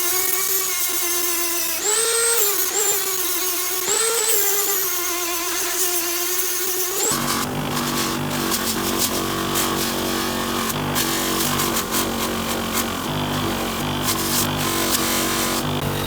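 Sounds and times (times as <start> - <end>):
power tool whining: 0.0 - 16.0.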